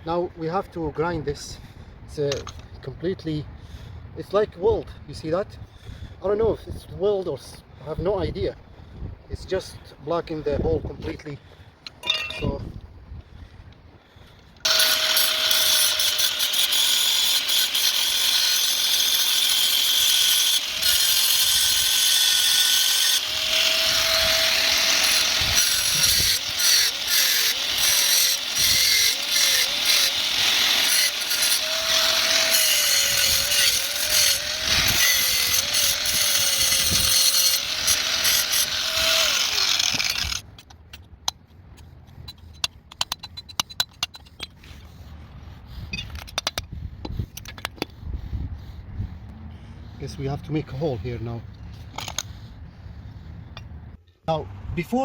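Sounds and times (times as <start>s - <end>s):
electric grinder grinding metal: 14.7s - 40.4s.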